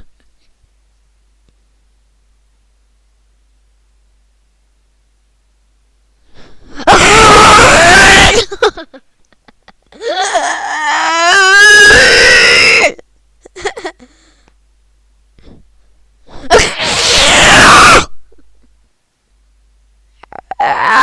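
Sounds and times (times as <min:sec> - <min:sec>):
harsh shrieking vocal blast: 0:06.8 - 0:08.5, 0:10.2 - 0:13.0, 0:16.5 - 0:18.2.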